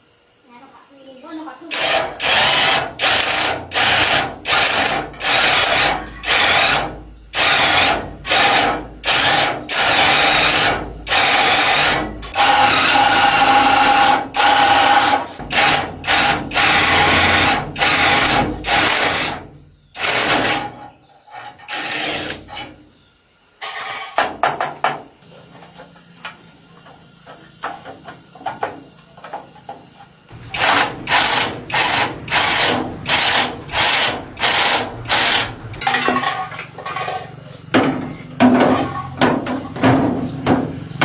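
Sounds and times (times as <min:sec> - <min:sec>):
power drill bursts: 0:01.7 - 0:20.8, 0:21.7 - 0:22.7, 0:30.3 - 0:36.3.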